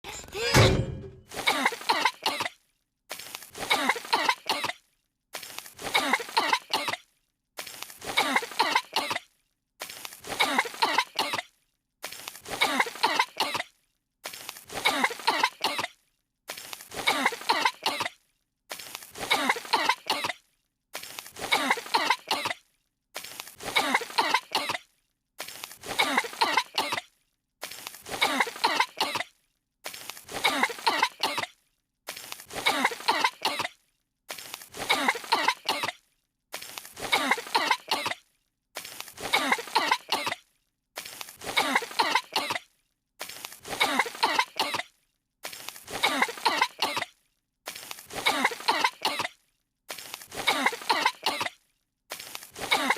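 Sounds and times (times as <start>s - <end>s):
cartoon characters coughing: 0.2s - 2.6s, 3.6s - 4.9s, 5.8s - 7.1s, 8.1s - 9.3s, 10.2s - 11.5s, 12.4s - 13.7s, 14.7s - 16.0s, 16.9s - 18.2s, 19.2s - 20.4s, 21.4s - 22.6s, 23.6s - 24.8s, 25.8s - 27.1s, 28.0s - 29.3s, 30.3s - 31.5s, 32.5s - 33.8s, 34.7s - 36.0s, 37.0s - 38.2s, 39.2s - 40.4s, 41.4s - 42.7s, 43.6s - 44.9s, 45.9s - 47.1s, 48.1s - 49.4s, 50.3s - 51.6s, 52.6s - 52.9s.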